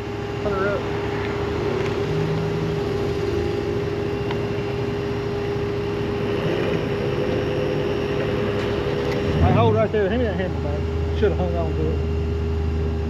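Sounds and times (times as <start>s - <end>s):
truck engine and winch running: 0.0s - 13.0s
winch whine: 0.0s - 13.0s.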